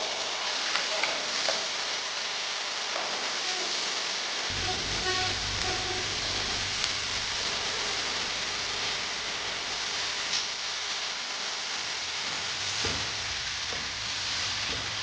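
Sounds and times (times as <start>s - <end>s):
low hum: 4.5s - 11.1s.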